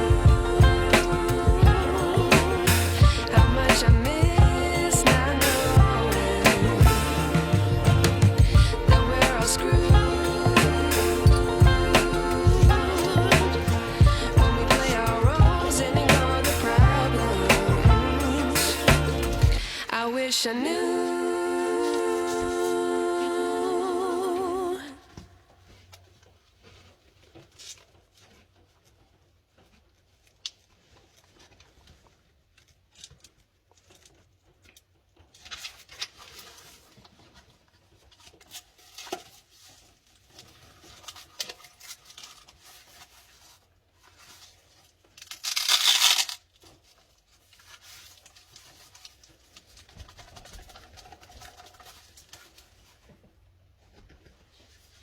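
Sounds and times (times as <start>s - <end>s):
singing music: 0.0s - 25.2s.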